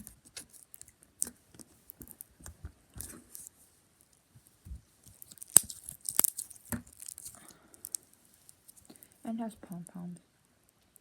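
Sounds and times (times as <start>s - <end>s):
slime squishing with wet clicks: 0.0s - 3.2s, 5.0s - 9.2s.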